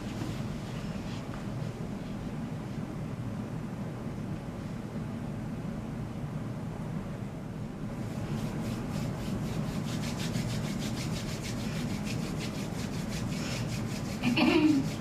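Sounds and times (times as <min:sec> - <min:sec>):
scratchy background noise: 0:08.0 - 0:15.0.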